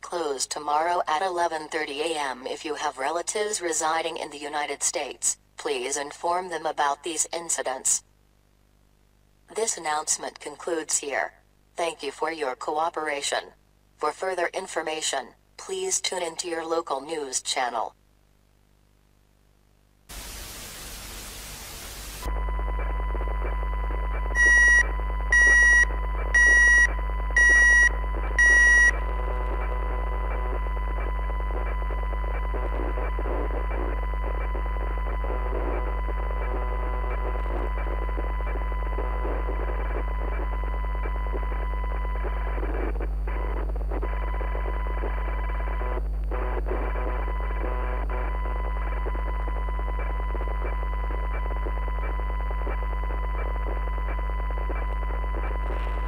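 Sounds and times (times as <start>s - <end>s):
static: 0.0s - 56.0s.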